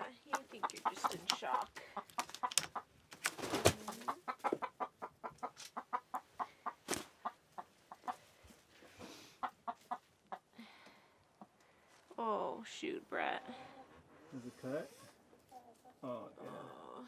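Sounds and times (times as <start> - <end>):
hens clucking: 0.0 - 10.6.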